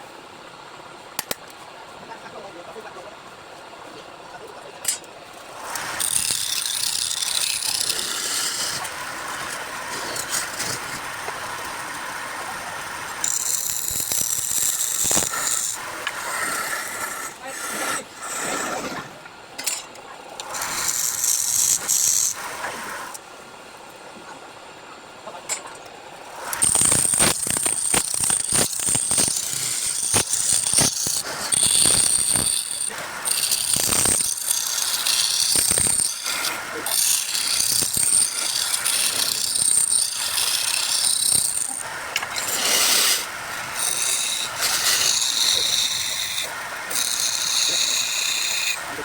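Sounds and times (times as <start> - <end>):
wood lathe turning: 5.3 - 19.0, 20.4 - 23.2, 26.3 - 49.0
cutting tool scraping wood: 5.6 - 19.1, 20.4 - 22.9, 26.4 - 49.0.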